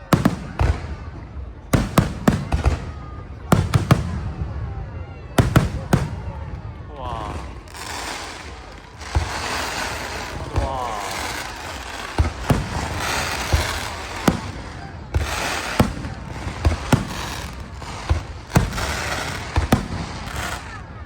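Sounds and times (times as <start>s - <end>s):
fireworks crackling hiss: 7.3s - 20.9s.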